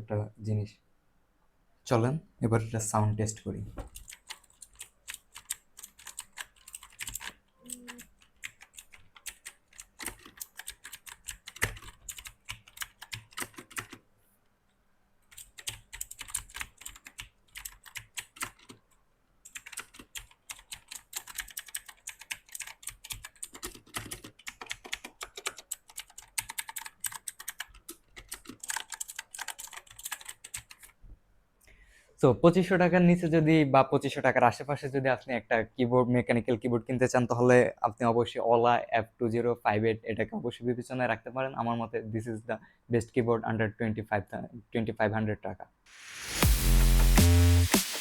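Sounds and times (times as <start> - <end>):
mechanical keyboard typing: 3.9 - 14.0, 15.3 - 18.8, 19.4 - 31.0.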